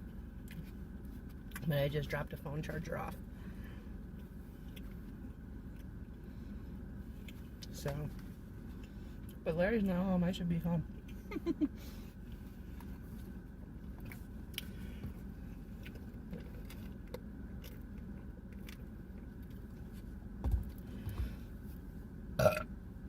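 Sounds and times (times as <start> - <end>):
person chewing a sandwich: 0.0 - 1.7, 4.0 - 9.4, 12.2 - 20.9
car cabin rumble: 0.0 - 23.0.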